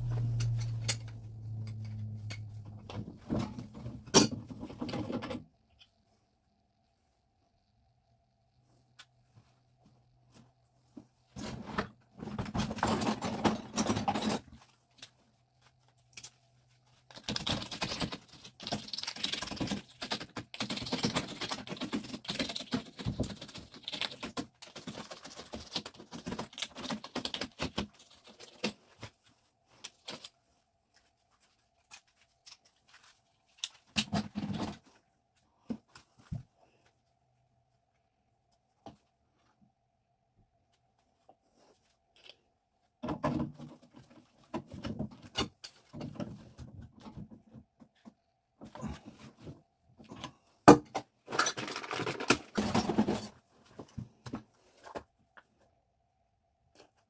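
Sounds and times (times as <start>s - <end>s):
small parts and tools clinking: 0.1s - 2.8s.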